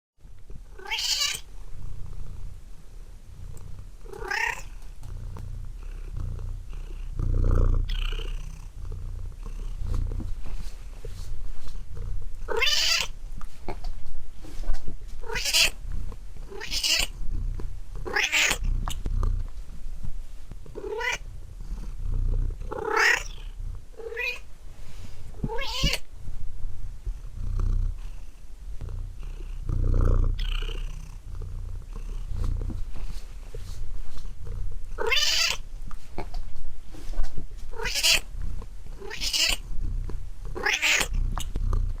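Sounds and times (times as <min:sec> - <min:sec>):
cat meowing: 0:00.8 - 0:01.4, 0:04.2 - 0:04.7, 0:12.5 - 0:13.1, 0:15.2 - 0:15.8, 0:16.5 - 0:17.1, 0:18.1 - 0:18.6, 0:20.8 - 0:21.2, 0:22.8 - 0:23.4, 0:25.4 - 0:26.0, 0:35.0 - 0:35.6, 0:37.8 - 0:38.2, 0:39.0 - 0:39.6, 0:40.6 - 0:41.1
low purring rumble: 0:01.5 - 0:36.8, 0:38.2 - 0:42.0.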